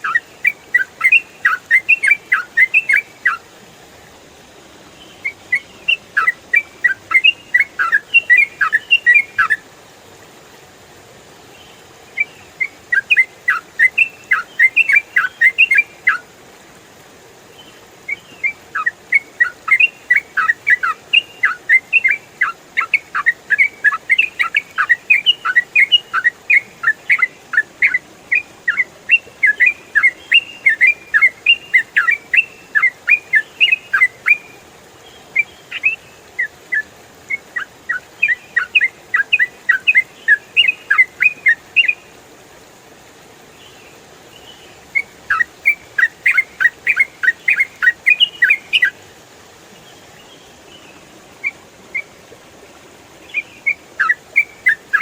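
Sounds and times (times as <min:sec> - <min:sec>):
bulbul chirping song: 0:00.0 - 0:03.4, 0:05.0 - 0:09.6, 0:12.1 - 0:16.3, 0:17.6 - 0:34.6, 0:35.3 - 0:42.0, 0:44.4 - 0:49.0, 0:53.2 - 0:55.0.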